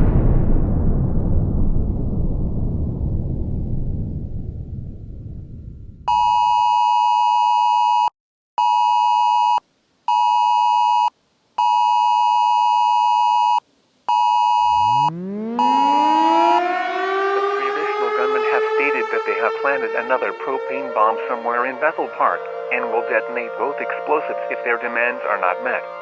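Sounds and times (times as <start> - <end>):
low rumble: 0.0 - 6.1, 14.6 - 16.6
harsh electronic alert tone beeps: 14.3 - 16.6
civil defense siren winding up: 14.5 - 24.5.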